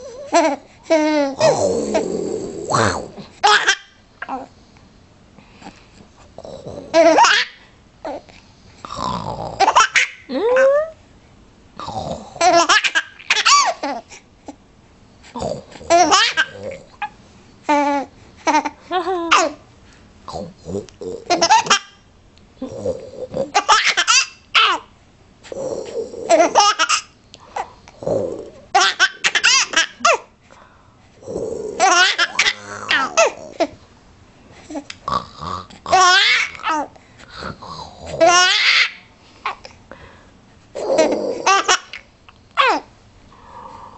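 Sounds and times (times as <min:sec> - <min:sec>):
young child laughing: 0:17.7 - 0:19.6.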